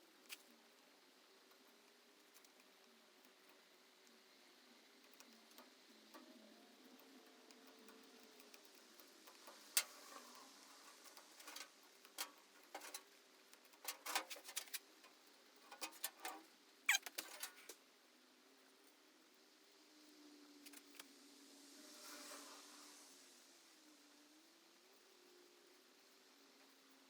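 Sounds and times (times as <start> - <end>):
small clicks and taps: 5.0 - 16.4
brief squeak: 16.9 - 17.2.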